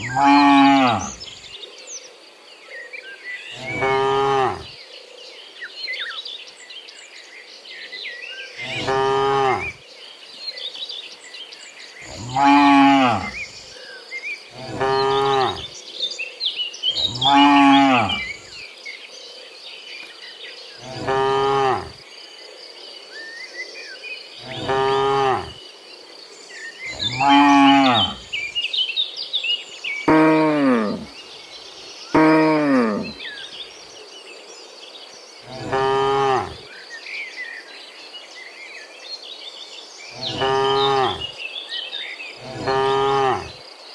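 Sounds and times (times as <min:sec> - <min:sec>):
cows mooing: 0:00.0 - 0:01.3, 0:03.6 - 0:04.7, 0:08.6 - 0:09.8, 0:12.1 - 0:13.4, 0:14.6 - 0:15.7, 0:17.0 - 0:18.4, 0:20.8 - 0:22.0, 0:24.4 - 0:25.6, 0:26.9 - 0:28.4, 0:30.1 - 0:31.1, 0:32.2 - 0:33.2, 0:35.5 - 0:36.6, 0:40.2 - 0:41.3, 0:42.4 - 0:43.5
high insect drone: 0:11.6 - 0:19.5, 0:20.5 - 0:43.9.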